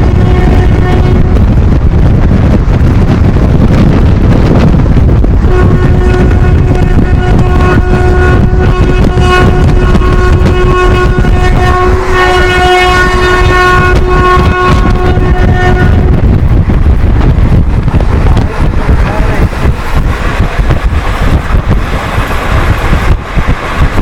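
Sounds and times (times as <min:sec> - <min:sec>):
two-tone train horn: 0:00.0 - 0:01.7, 0:05.4 - 0:16.4
train rumbling at speed: 0:00.0 - 0:24.0.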